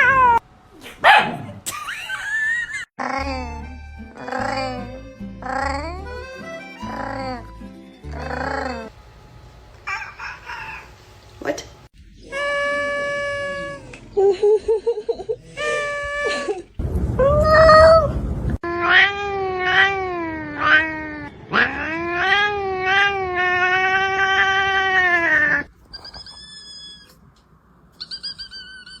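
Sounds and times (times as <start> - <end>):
cat yowling: 0.0 - 0.4, 6.8 - 7.5, 12.2 - 14.0, 17.3 - 27.2.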